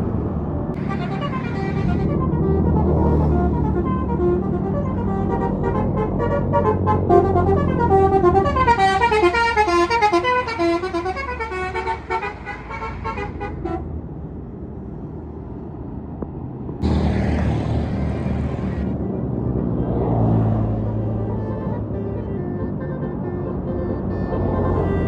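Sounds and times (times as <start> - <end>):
low engine rumble: 0.0 - 25.0
musical bus horn melody: 0.8 - 14.0, 20.8 - 25.0
loud rushing noise: 16.8 - 19.0.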